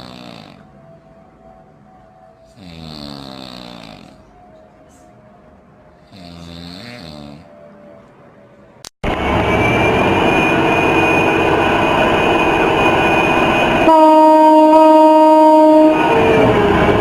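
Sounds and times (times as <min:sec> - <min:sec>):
train rumbling: 0:07.5 - 0:17.0
train horn blast: 0:13.8 - 0:17.0.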